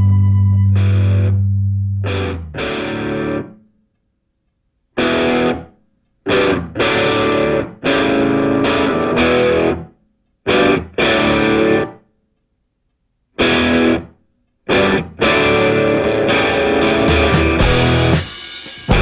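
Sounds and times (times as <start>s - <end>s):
distorted electric guitar chords: 0.0s - 3.5s, 14.7s - 18.3s.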